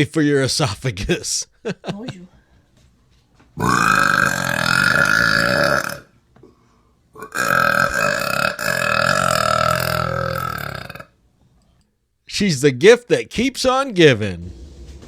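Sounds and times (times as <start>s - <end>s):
woman burping: 3.6s - 6.1s, 7.2s - 11.1s.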